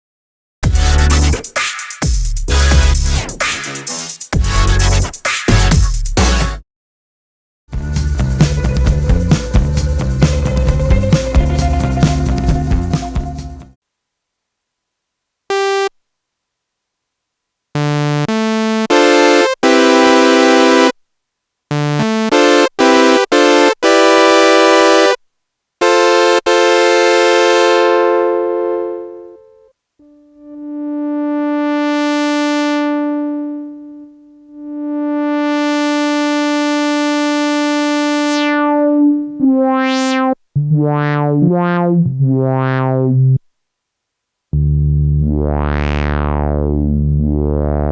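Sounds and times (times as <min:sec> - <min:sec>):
synthesizer chords: 0:00.6 - 0:01.4, 0:02.4 - 0:05.0, 0:07.8 - 0:13.8, 0:17.8 - 0:20.9, 0:25.8 - 0:43.4, 0:44.6 - 0:47.9.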